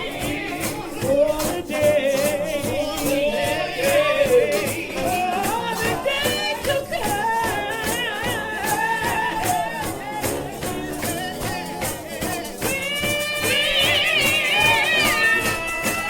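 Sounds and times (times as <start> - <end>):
drums and cymbals beat: 0.0 - 16.0
trombone shout band playing: 0.0 - 16.0.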